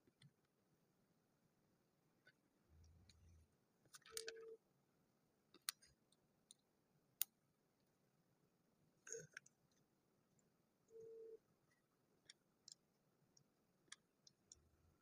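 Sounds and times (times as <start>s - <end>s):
short steady beep: 10.9s - 11.4s.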